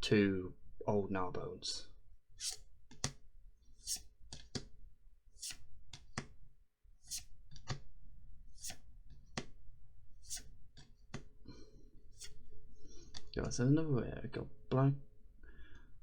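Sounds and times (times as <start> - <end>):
card swishing off stack: 2.4 - 3.2, 5.4 - 5.6, 7.1 - 7.3, 8.6 - 8.8, 10.3 - 10.5.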